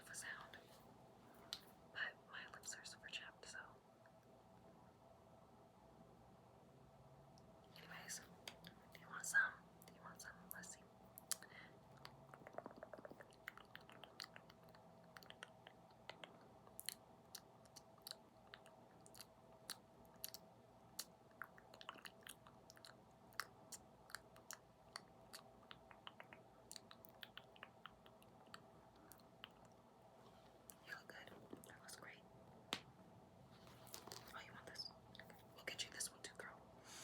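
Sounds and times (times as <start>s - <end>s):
wet mouth clicks and smacks: 11.2s - 29.8s.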